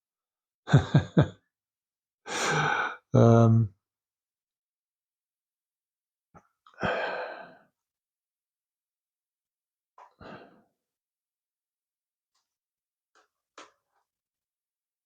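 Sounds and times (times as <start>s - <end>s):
man sighing: 2.3s - 3.6s.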